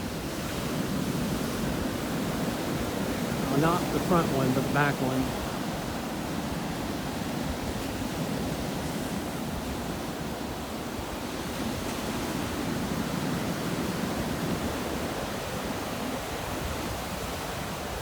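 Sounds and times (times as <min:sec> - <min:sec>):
surf breaking on beach: 0:00.4 - 0:05.7.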